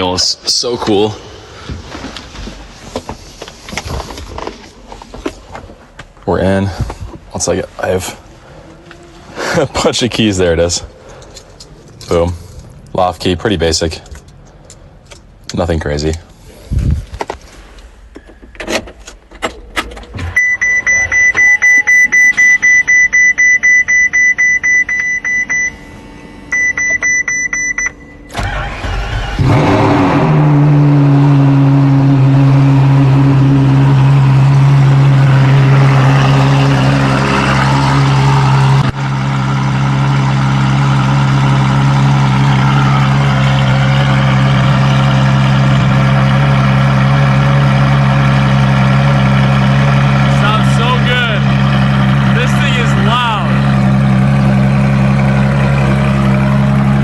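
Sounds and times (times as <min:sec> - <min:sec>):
car engine starting and idling: 0:17.2 - 0:57.0
pulsing electronic warning chime: 0:20.4 - 0:28.3.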